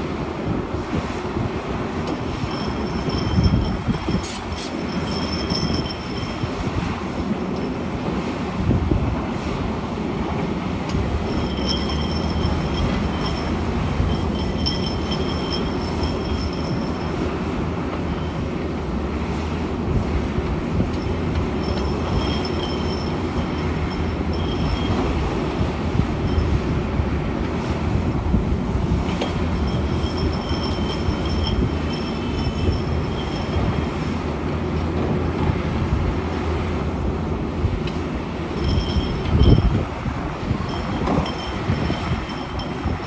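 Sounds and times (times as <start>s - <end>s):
excavator engine rumbling: 1.2s - 43.0s
high-pitched metallic squeals: 2.4s - 6.6s, 11.2s - 17.4s, 21.0s - 25.5s, 29.2s - 34.0s.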